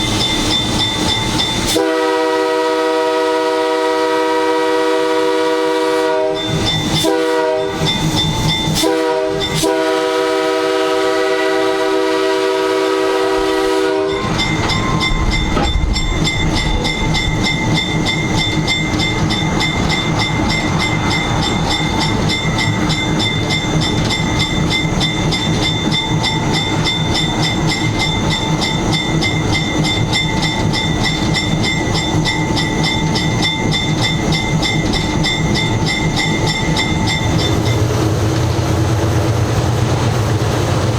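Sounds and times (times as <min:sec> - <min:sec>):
train wheels clattering on track: 0:00.0 - 0:40.9
locomotive air horn blasts: 0:01.7 - 0:07.9, 0:08.7 - 0:15.2.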